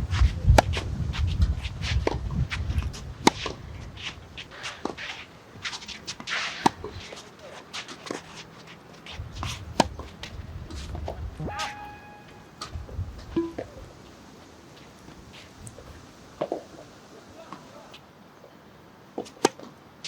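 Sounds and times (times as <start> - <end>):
wind buffeting microphone: 0.0 - 4.4, 9.2 - 11.6, 12.6 - 14.0
shoes scuffing on court: 0.1 - 12.8.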